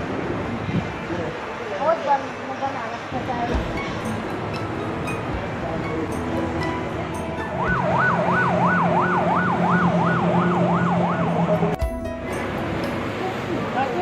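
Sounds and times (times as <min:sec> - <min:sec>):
electronic siren yelping: 0:07.6 - 0:11.7.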